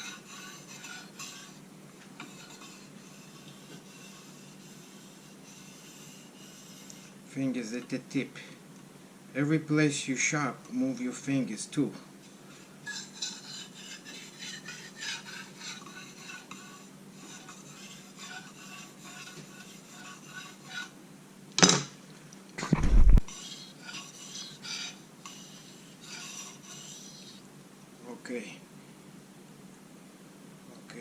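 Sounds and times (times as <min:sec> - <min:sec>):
knife scraping on whetstone: 0:00.0 - 0:01.6, 0:02.2 - 0:07.2, 0:12.5 - 0:21.0, 0:23.3 - 0:27.4.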